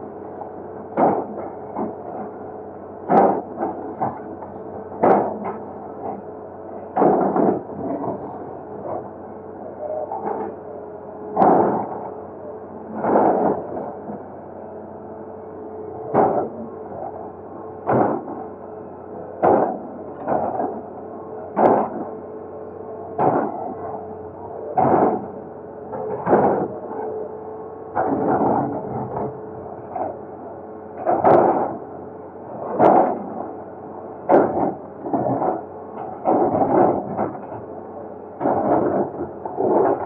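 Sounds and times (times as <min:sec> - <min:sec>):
diesel engine hum: 0:00.0 - 0:40.0
excavator bucket striking concrete: 0:03.0 - 0:04.4, 0:05.0 - 0:05.7, 0:06.8 - 0:08.4, 0:11.3 - 0:12.2, 0:16.1 - 0:17.1, 0:17.8 - 0:18.5, 0:19.4 - 0:20.9, 0:21.5 - 0:22.2, 0:23.2 - 0:23.8, 0:24.7 - 0:26.8, 0:31.0 - 0:31.8, 0:32.7 - 0:33.4, 0:34.2 - 0:37.6.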